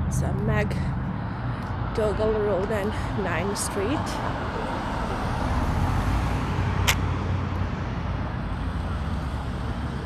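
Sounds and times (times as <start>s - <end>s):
vehicle engine rumble: 0.0s - 10.0s
sharp click: 6.8s - 7.1s.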